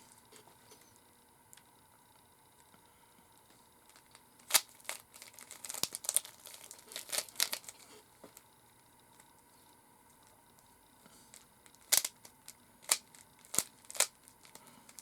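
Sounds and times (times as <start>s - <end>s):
puzzle cube plastic clicks: 11.8s - 15.0s.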